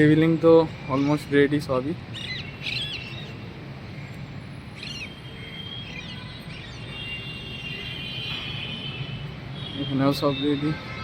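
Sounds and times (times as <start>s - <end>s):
outdoor background noise: 0.0s - 11.0s
small birds chirping: 0.8s - 7.8s
high whistled bird notes: 4.8s - 7.2s.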